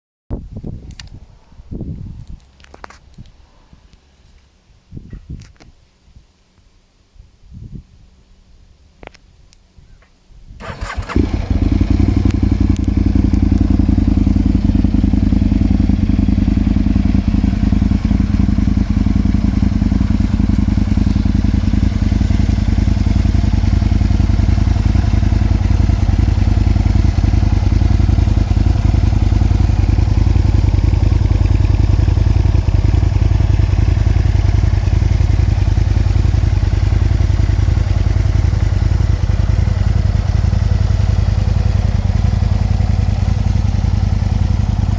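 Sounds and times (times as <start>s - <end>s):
motorcycle engine starting and idling: 10.6s - 44.9s.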